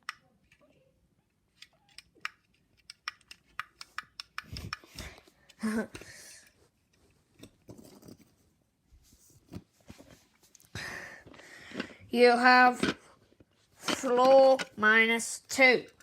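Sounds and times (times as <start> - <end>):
handling and rustling: 4.5 - 14.9.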